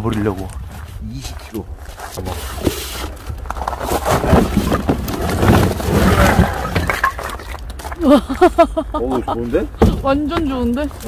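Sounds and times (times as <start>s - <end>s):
firewood rustling and knocks: 1.9s - 8.0s, 9.8s - 11.0s.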